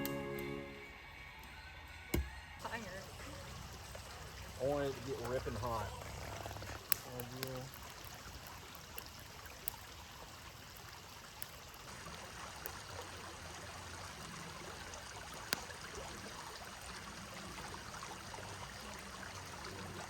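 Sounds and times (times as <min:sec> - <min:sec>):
hot pan hissing: 0:02.6 - 0:14.0
sharp ticks from pan: 0:03.0 - 0:12.0.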